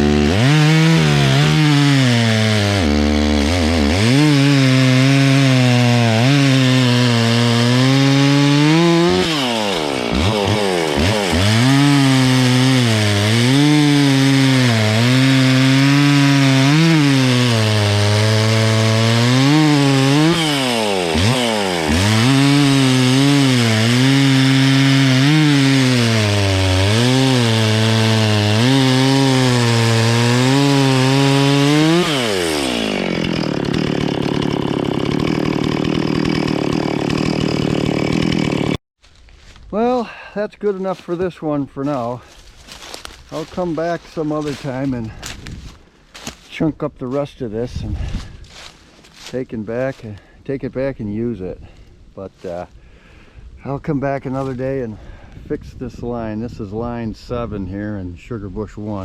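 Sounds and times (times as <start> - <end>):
chainsaw cutting wood: 0.0 - 38.8, 41.9 - 46.6, 47.6 - 50.4.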